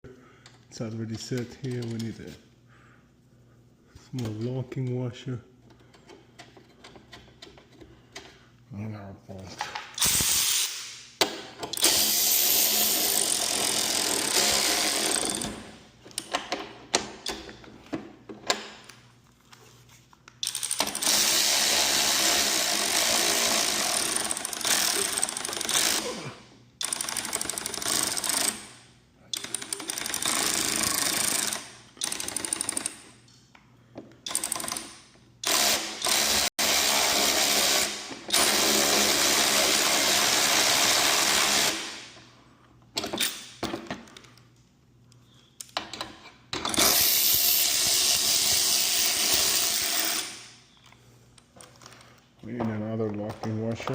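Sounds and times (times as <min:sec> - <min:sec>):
metal parts clicking and clinking: 0:20.4 - 0:21.1.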